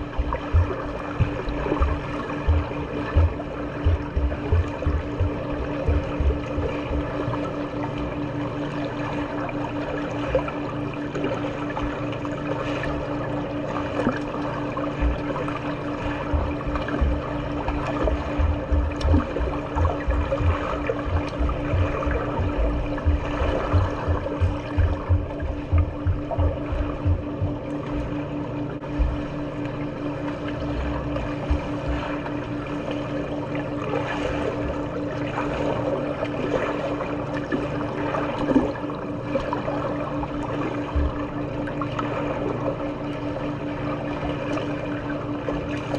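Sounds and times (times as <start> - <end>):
low thumps: 0.0 - 7.5, 15.0 - 15.4, 16.1 - 27.7, 28.9 - 29.4, 30.8 - 32.2
pulsing low hum: 0.0 - 45.9
water rushing and splashing: 0.0 - 45.9.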